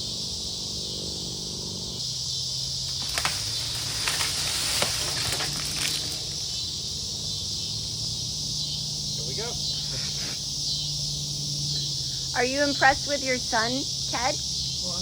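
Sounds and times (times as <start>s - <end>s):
insects chirping: 0.0s - 15.0s
rustles and clicks: 2.9s - 6.4s.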